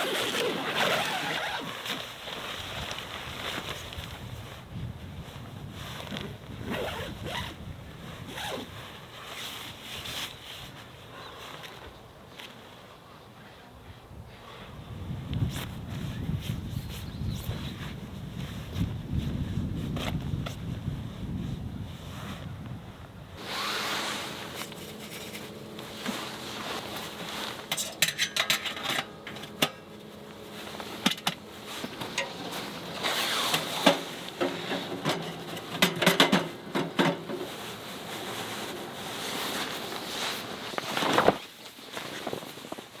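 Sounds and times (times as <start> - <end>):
gear rubbing and scraping: 0.0 - 2.0, 23.4 - 41.4
low wind rumble: 14.0 - 27.7.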